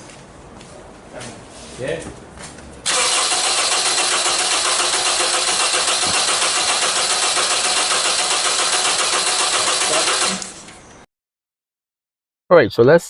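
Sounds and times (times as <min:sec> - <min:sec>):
engine cranking without starting: 0:02.9 - 0:10.8.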